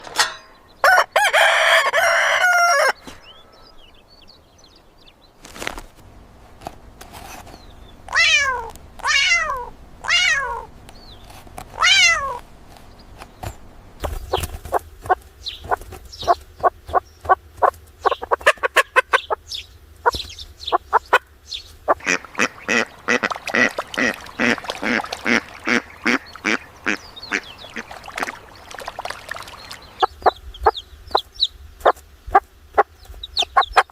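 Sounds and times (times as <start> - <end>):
rooster crowing: 0.8 - 3.0
hens clucking: 14.2 - 33.9.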